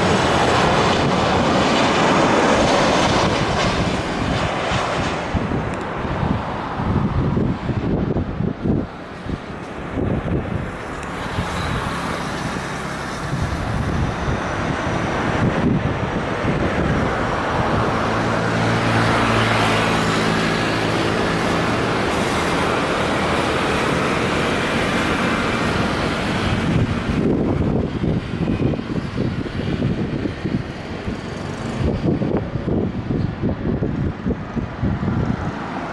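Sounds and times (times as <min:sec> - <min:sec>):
jet airliner passing: 0:00.0 - 0:35.9
wind buffeting microphone: 0:00.0 - 0:35.9.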